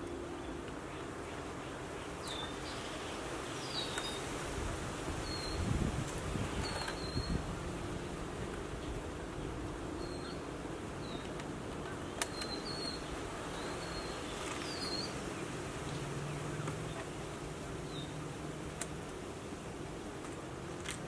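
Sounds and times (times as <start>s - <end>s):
small birds chirping: 0.4s - 4.3s, 6.5s - 7.5s, 8.8s - 17.2s.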